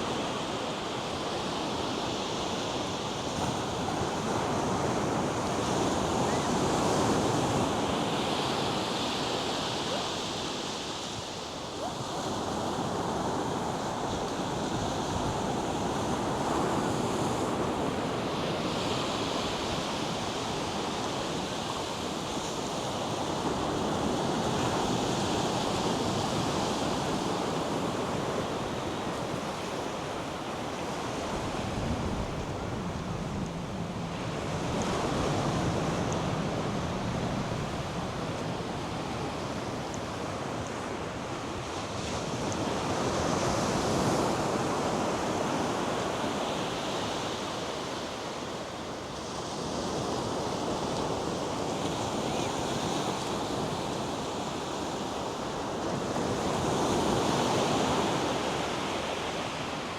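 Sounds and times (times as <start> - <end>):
wind on microphone: 30.9 - 40.9.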